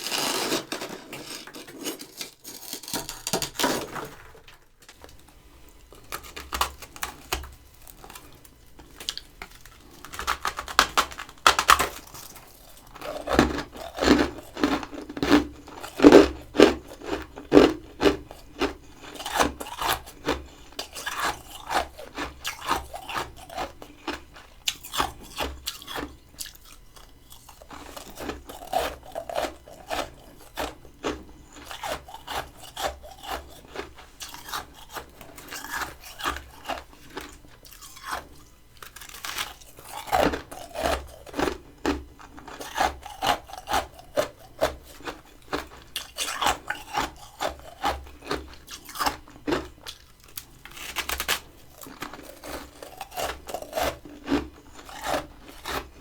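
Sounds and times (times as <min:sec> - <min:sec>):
crunching frost being chewed: 0:00.0 - 0:04.2, 0:05.0 - 0:56.0.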